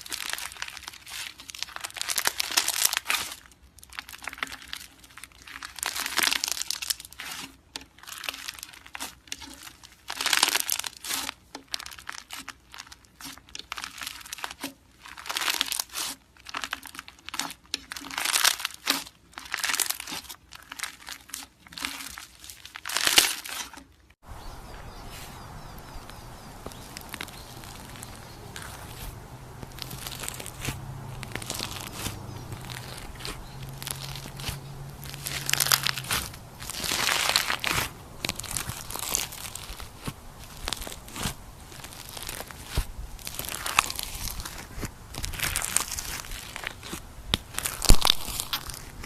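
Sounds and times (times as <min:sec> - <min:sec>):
slime crackling when squeezed: 0:00.0 - 0:07.4, 0:08.0 - 0:23.7, 0:25.1 - 0:49.0
quiet steady hiss: 0:24.3 - 0:49.0.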